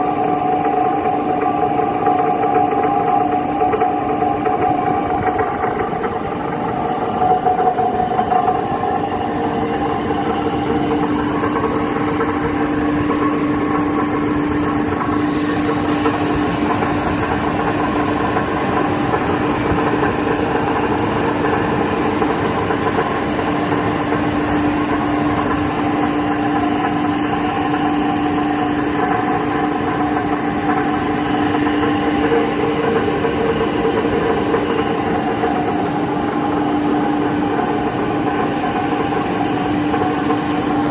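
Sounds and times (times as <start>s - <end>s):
gearbox humming with rough noise: 0.0s - 40.9s.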